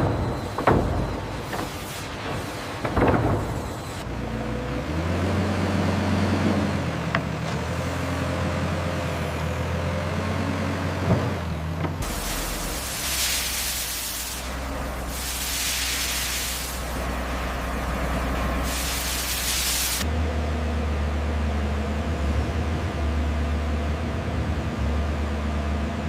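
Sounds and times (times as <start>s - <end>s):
sawmill machinery humming: 0.0s - 26.0s
hissing bursts: 12.0s - 17.1s, 18.6s - 20.0s.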